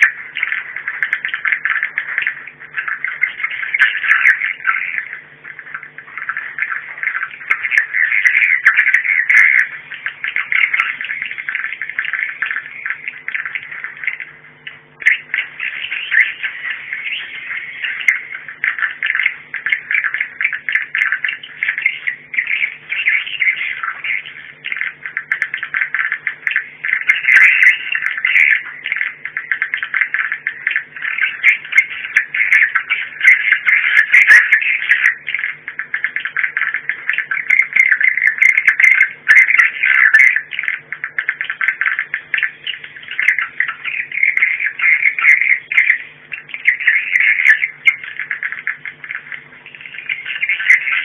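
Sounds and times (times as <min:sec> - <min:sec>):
faint steady hum: 0:00.0 - 0:51.0
rapid twittering bird chirps: 0:15.0 - 0:51.0.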